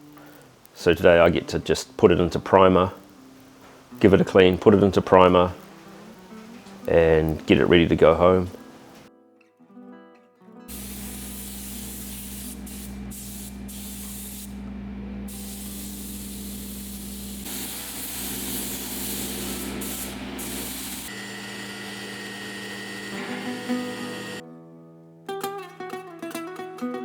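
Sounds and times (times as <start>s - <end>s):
steady low hum: 10.7s - 21.1s
spray gun hissing: 10.7s - 24.4s.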